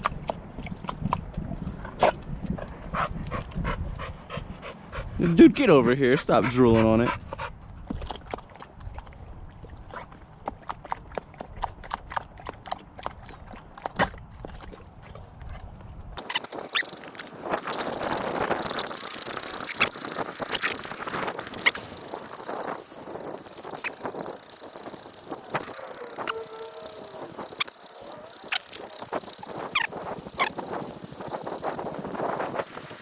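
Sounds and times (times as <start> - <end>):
dog panting: 2.6 - 7.7
scattered clicks: 16.2 - 33.0.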